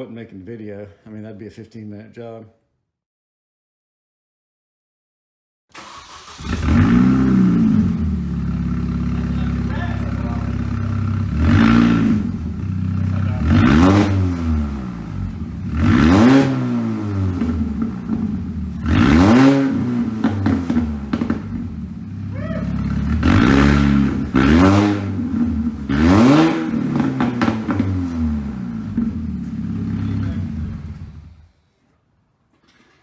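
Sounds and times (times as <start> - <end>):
car engine revving: 5.8 - 31.5.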